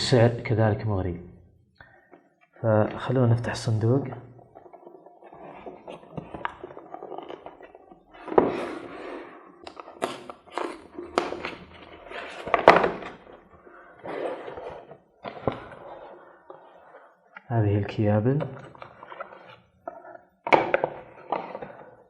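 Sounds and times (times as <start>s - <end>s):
cardboard box rustling: 4.5s - 8.9s.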